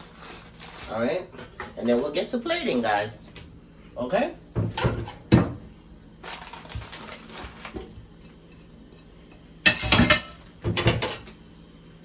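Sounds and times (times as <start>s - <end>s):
kitchen clicking and rustling: 0.0s - 2.1s, 4.6s - 8.5s, 9.3s - 11.4s.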